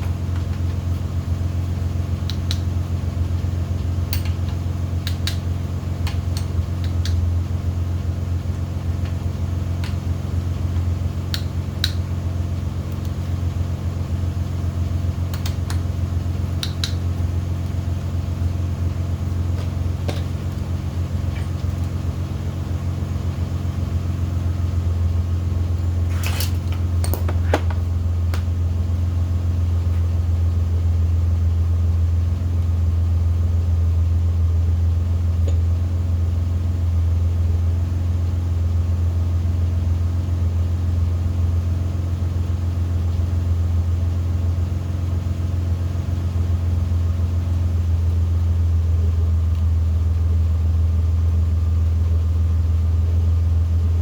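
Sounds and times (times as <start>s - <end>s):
low droning hum: 0.0s - 38.3s.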